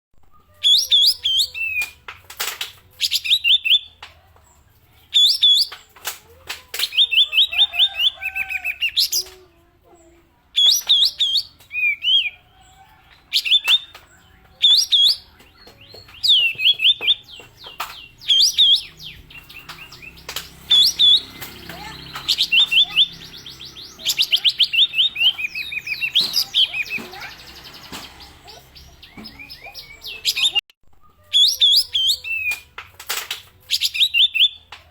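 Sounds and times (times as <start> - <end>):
sharp clicks: 1.6 - 3.4, 13.4 - 28.6.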